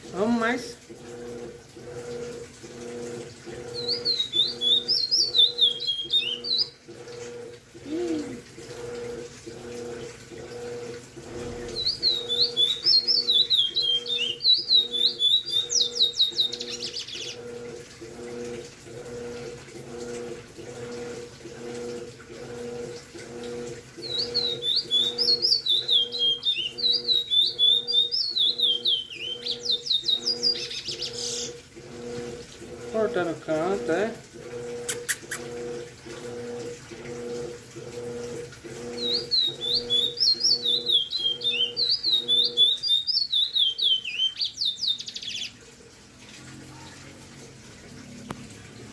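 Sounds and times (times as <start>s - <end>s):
low pulsing hum: 0.0s - 42.8s
buzzy bird trill: 3.7s - 6.8s, 11.4s - 17.4s, 24.0s - 31.6s, 39.0s - 45.6s
songbird whistling: 3.8s - 6.8s, 11.6s - 17.3s, 24.0s - 31.5s, 39.0s - 45.5s.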